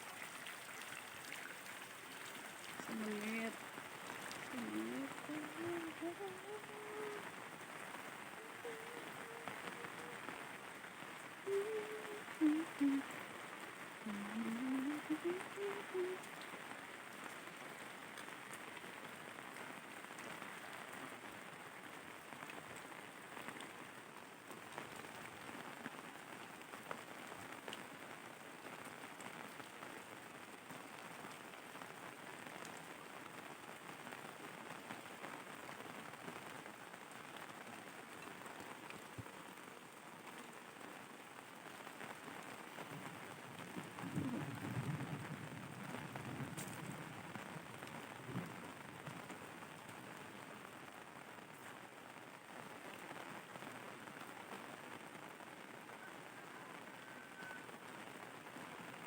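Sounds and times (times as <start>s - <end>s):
steady rain falling: 0.0s - 59.0s
short voice-like pitched sounds: 4.4s - 7.4s, 8.2s - 10.3s, 11.4s - 13.2s, 14.1s - 16.3s.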